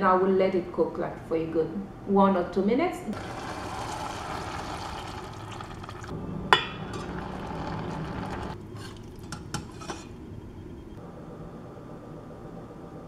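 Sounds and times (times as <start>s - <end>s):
spoon clinking on pot: 6.6s - 7.1s
spoon stirring in a pot: 8.4s - 10.2s.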